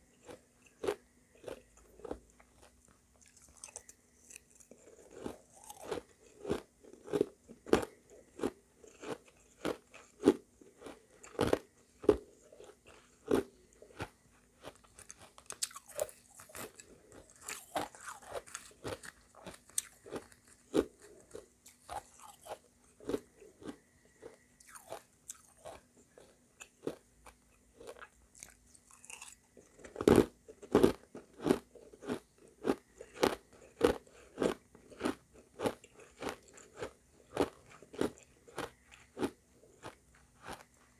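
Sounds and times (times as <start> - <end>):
chewing crunchy ice: 0.0 - 40.9.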